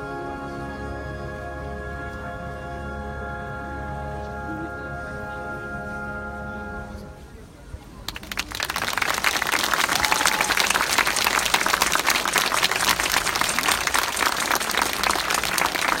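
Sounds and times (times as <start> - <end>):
audience applause: 8.0 - 16.0.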